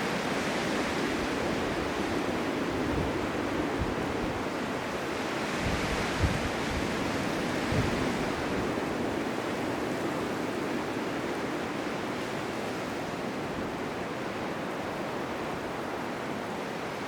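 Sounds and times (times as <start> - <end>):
gusts buffeting microphone: 0.2 - 10.0.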